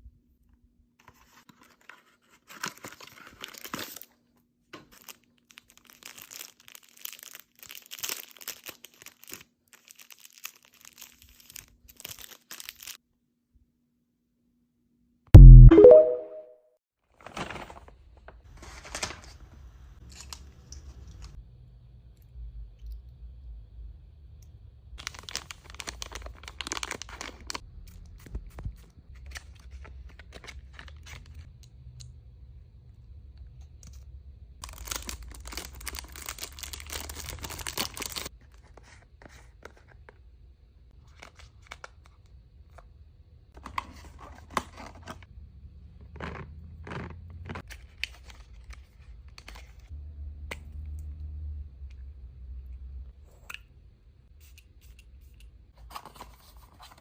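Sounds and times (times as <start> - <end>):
packaging tearing and crinkling: 2.4 - 4.1, 4.9 - 13.0, 25.0 - 27.6, 34.6 - 38.3.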